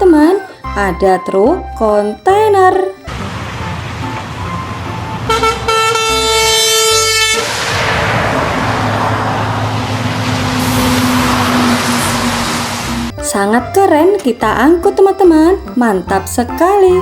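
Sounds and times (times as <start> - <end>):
loud rushing noise: 3.2 - 13.1
air horn playing a tune: 5.2 - 7.6.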